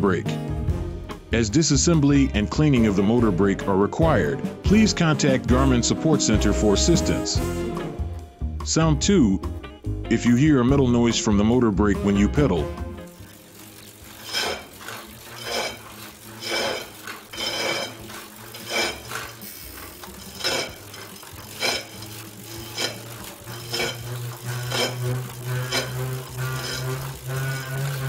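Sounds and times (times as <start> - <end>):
rhythmic metallic scraping: 12.0 - 28.0.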